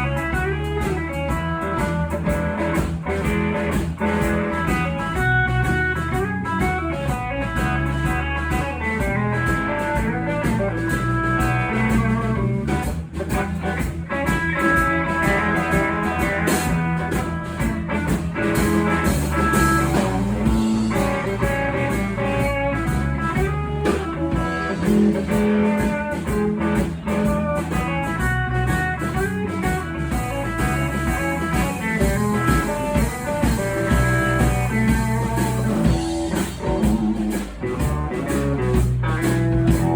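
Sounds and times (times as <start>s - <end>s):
blues-rock guitar: 0.0s - 39.9s
steady drum beat: 0.0s - 39.9s.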